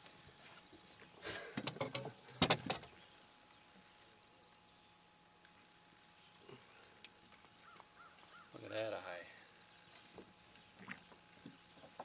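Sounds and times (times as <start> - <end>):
bird chirping: 2.7 - 6.5, 7.6 - 8.7, 9.7 - 12.0.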